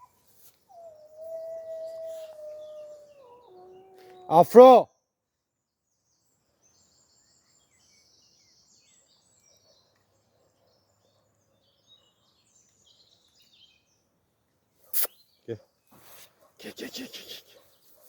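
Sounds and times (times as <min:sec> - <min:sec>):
faint bird chirps: 0:00.0 - 0:04.4.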